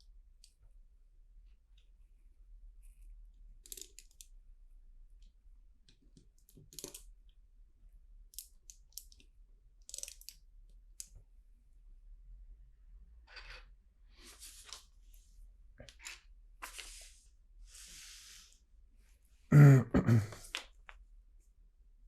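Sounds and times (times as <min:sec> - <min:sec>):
plastic bricks clicking together: 0:03.6 - 0:04.3, 0:06.4 - 0:07.1, 0:08.3 - 0:09.2, 0:09.8 - 0:10.4.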